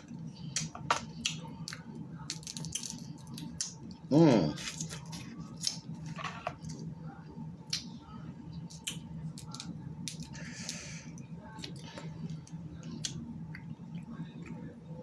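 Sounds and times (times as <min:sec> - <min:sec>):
crab shells cracking: 0:00.6 - 0:03.9.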